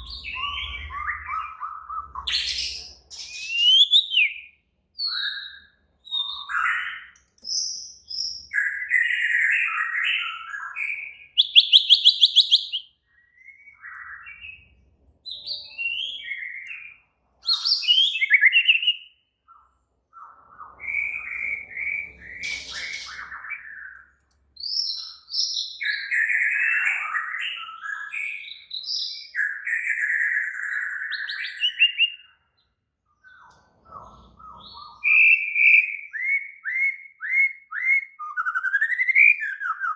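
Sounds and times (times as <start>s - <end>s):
songbird singing: 0.0s - 33.4s, 34.2s - 39.9s.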